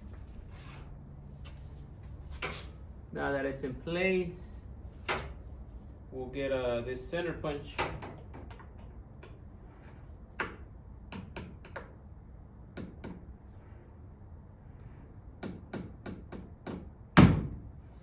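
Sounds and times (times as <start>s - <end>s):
metal tools clicking and tapping: 7.8s - 9.4s.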